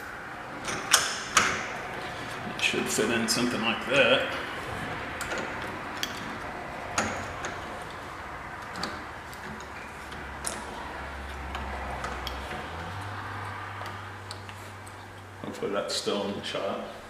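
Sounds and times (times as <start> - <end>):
metal lock parts clicking: 8.6 - 10.8.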